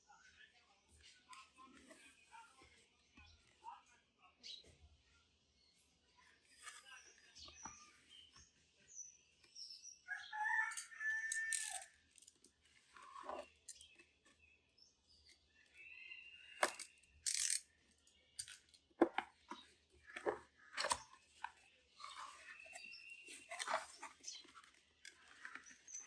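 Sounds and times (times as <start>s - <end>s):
packaging clicks and rustles: 16.6s - 17.8s, 18.4s - 26.0s.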